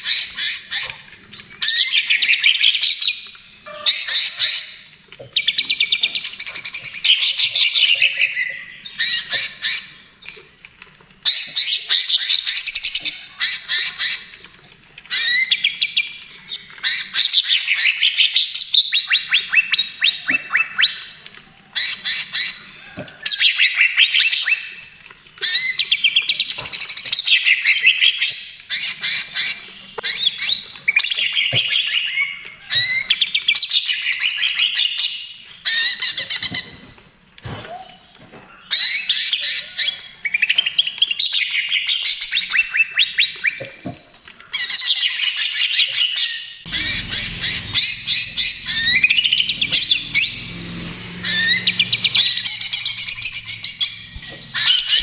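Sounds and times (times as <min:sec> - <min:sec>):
bird singing chirps and trills: 0:44.6 - 0:55.0.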